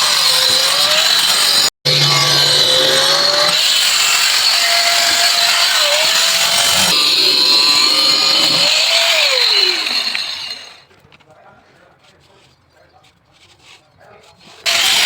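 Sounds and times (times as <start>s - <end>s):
power tool cutting pipe: 0.0s - 10.8s, 14.6s - 15.0s.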